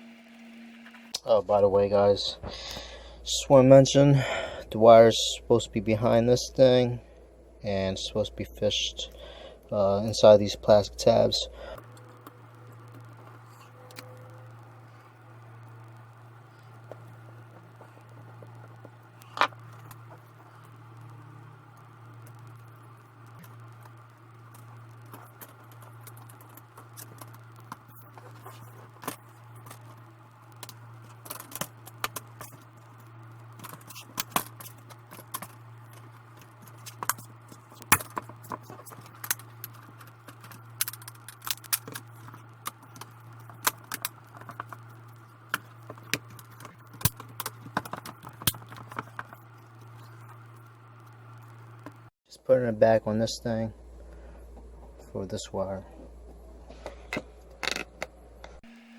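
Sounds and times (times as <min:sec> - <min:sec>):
steady low hum: 0:00.0 - 0:58.9
plastic parts clicking and tapping: 0:33.6 - 0:50.2.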